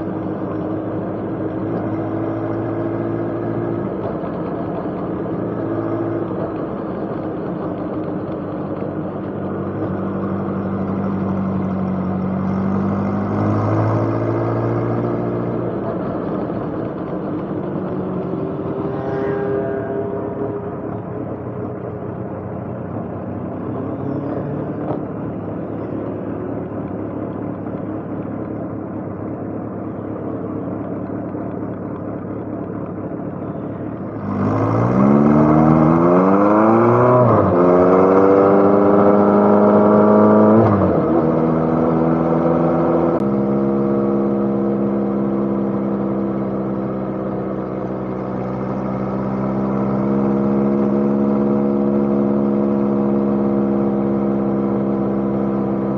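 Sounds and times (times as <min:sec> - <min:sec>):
motorcycle engine revving: 0:09.9 - 0:28.3, 0:33.4 - 0:55.9.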